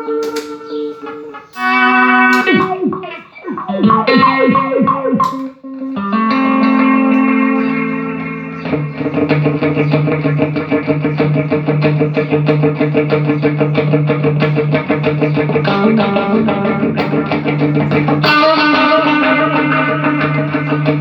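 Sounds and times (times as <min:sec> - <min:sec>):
electric guitar chord ringing: 0:00.0 - 0:21.0
electric guitar fast picked notes: 0:00.0 - 0:21.0.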